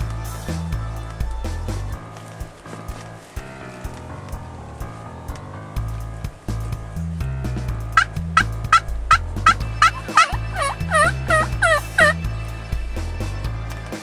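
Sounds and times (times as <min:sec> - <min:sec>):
music with steady bass line: 0:00.0 - 0:14.0
turkey calls: 0:07.9 - 0:13.4.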